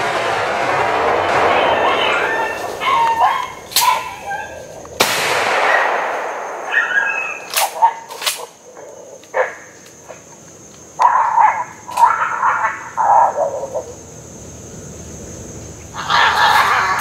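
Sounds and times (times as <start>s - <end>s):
sharp cracks: 0.0s - 12.8s
shotgun shot echoing: 5.0s - 8.4s.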